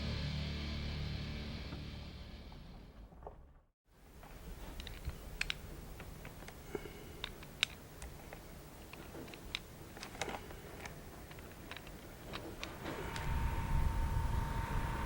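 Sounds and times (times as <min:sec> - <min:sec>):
low steady rumble: 0:07.2 - 0:15.0.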